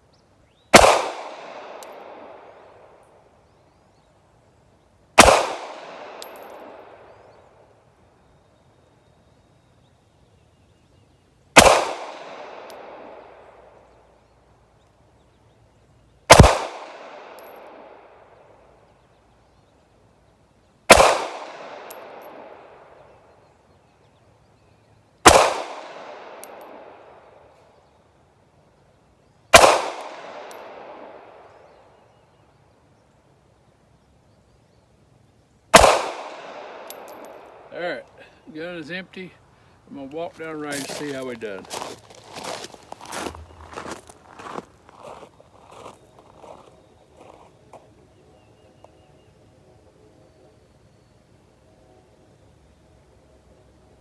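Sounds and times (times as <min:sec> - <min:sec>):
pistol shots with echo: 0:00.7 - 0:02.8, 0:05.2 - 0:07.1, 0:11.6 - 0:13.4, 0:16.3 - 0:18.1, 0:20.9 - 0:22.9, 0:25.2 - 0:27.2, 0:29.5 - 0:31.5, 0:35.7 - 0:37.7.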